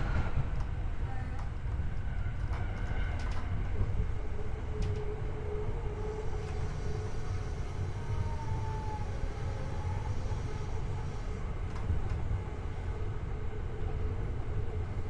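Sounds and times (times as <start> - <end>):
train wheels rumbling on rail: 0.0 - 15.0.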